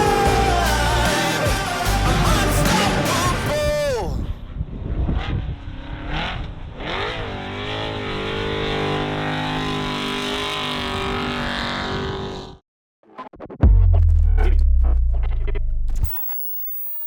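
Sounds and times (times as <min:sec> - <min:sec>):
truck engine revving: 0:00.0 - 0:03.5.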